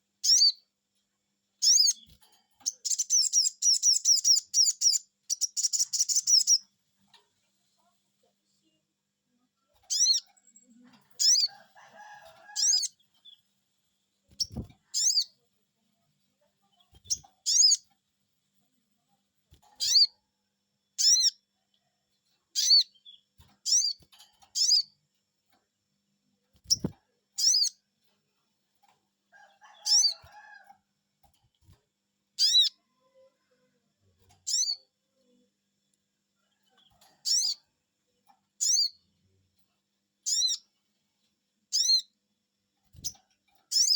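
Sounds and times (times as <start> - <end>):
bird chirping: 0.2 - 0.7, 1.6 - 6.7, 9.8 - 11.6, 12.5 - 13.5, 14.3 - 15.4, 16.6 - 18.0, 19.7 - 20.2, 20.9 - 21.5, 22.5 - 25.0, 26.6 - 27.8, 29.6 - 30.5, 32.4 - 32.8, 34.3 - 34.9, 36.8 - 37.6, 38.5 - 39.1, 40.2 - 40.7, 41.7 - 42.2, 42.9 - 43.9.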